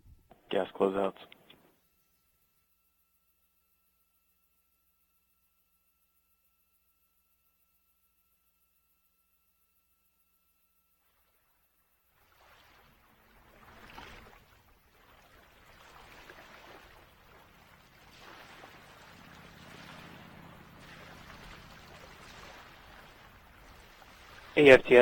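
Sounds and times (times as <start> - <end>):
faint rushing hiss: 11.1 - 25.0
low steady hum: 13.0 - 25.0.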